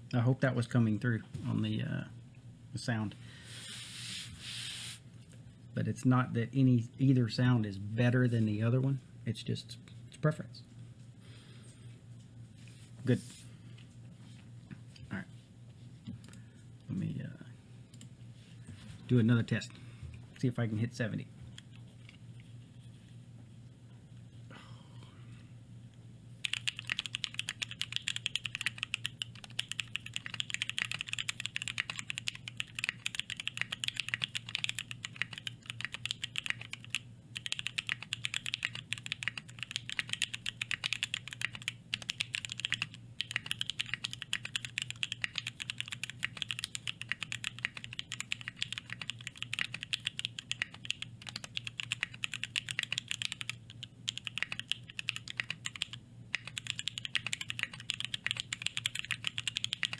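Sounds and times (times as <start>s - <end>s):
mechanical keyboard typing: 26.4s - 59.9s.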